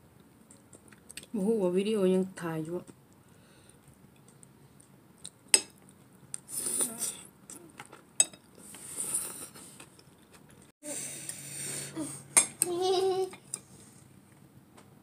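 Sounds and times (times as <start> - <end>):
utensils clinking against a bowl: 7.8 - 8.5.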